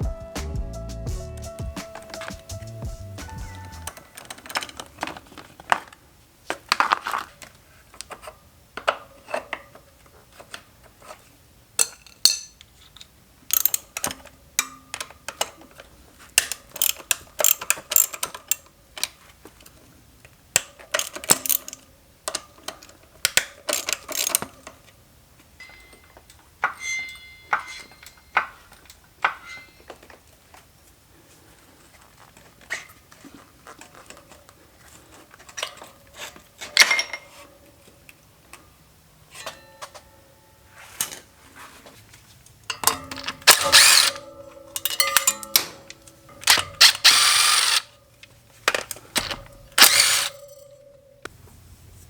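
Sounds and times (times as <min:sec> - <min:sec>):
metal tools clinking: 0:11.8 - 0:15.5, 0:25.5 - 0:30.3, 0:33.8 - 0:38.0, 0:42.7 - 0:51.3.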